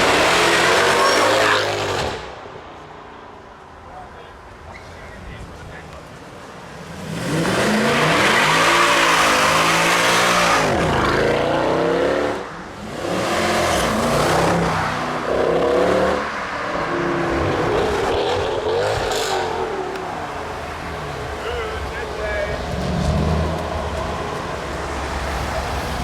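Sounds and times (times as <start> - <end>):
car engine revving hard: 0.0 - 2.2, 6.8 - 19.9.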